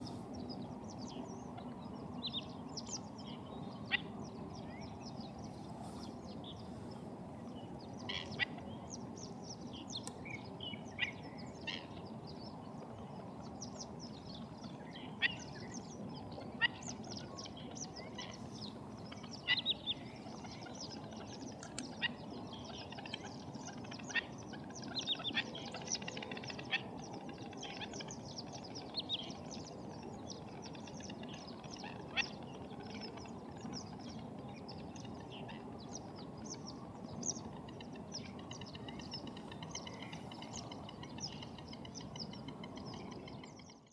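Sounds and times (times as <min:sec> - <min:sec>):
birds yelping calls: 0:13.6 - 0:43.6.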